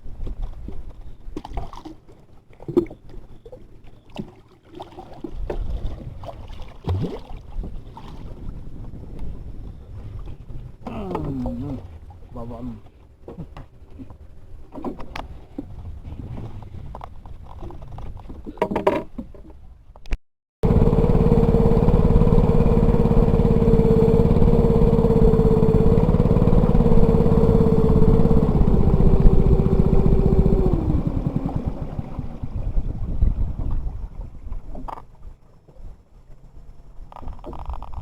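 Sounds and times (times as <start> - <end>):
small engine running: 20.6 - 32.5.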